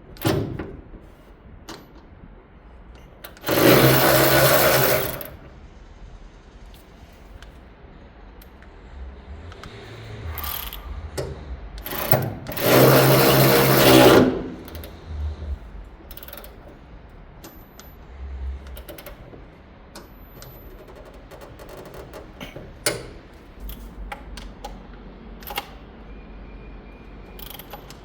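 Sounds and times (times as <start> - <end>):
cordless ratchet motor running: 3.4 - 5.4, 11.8 - 15.0
mechanical clicks: 9.5 - 15.0, 16.1 - 16.8, 18.6 - 25.8, 27.4 - 28.0.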